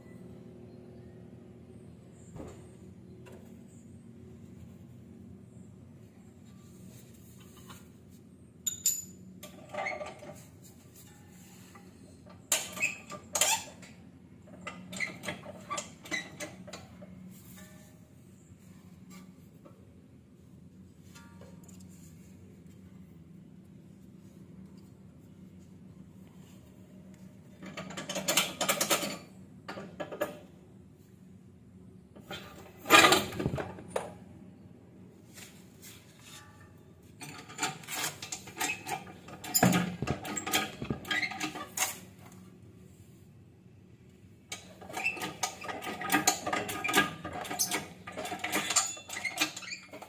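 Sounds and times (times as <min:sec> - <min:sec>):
hand tools clicking and clattering: 0:08.6 - 0:10.4, 0:44.5 - 0:50.0.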